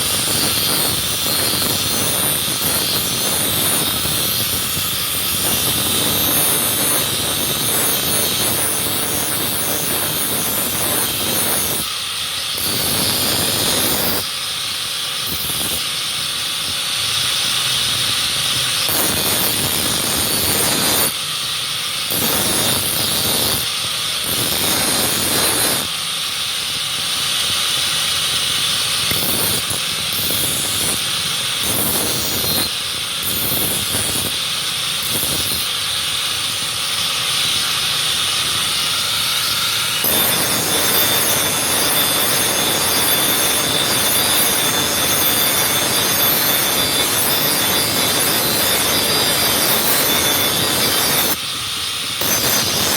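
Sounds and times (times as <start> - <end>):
knife grinding on sharpening wheel: 0.0 - 52.9.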